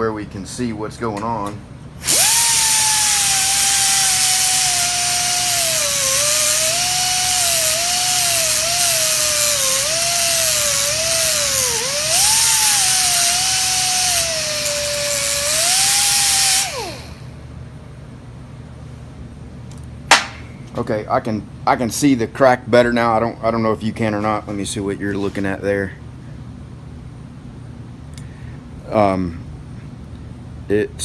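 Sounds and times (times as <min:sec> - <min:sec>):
grinder spinning down: 0:02.0 - 0:17.3
rotary grinder whining on metal: 0:02.0 - 0:17.3.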